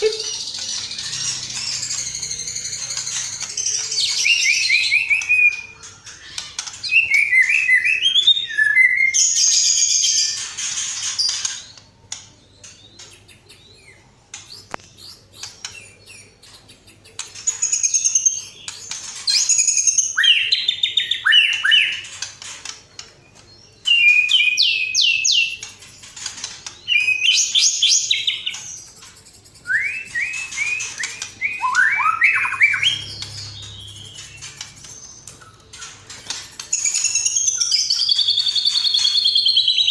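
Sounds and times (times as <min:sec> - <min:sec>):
songbird trilling and chirping: 0:26.6 - 0:39.9.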